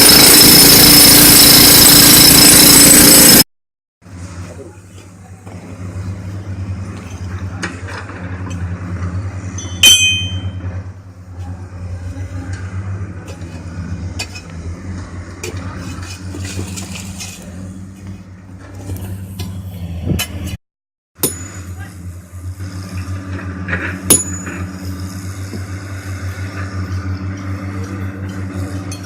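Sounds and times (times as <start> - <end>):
heavy machine engine running: 0.0 - 3.4, 21.6 - 29.0
loud ringing metal clank: 9.5 - 10.8, 21.2 - 21.8, 23.9 - 24.9.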